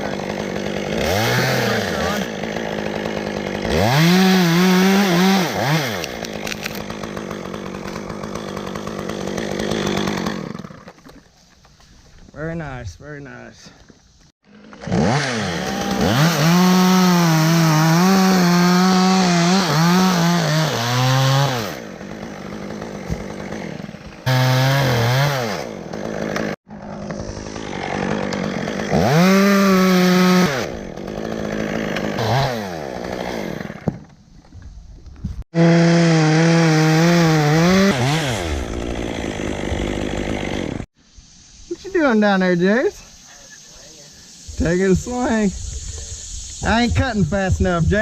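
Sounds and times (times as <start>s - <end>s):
chainsaw cutting wood: 0.0s - 11.7s, 14.4s - 34.5s, 35.2s - 41.0s.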